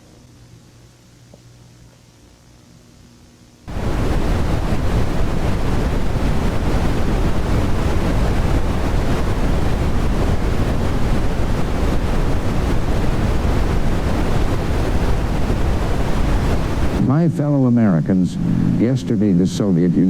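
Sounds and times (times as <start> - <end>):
rushing static hiss: 0.0 - 20.0
deep rumble: 3.7 - 20.0.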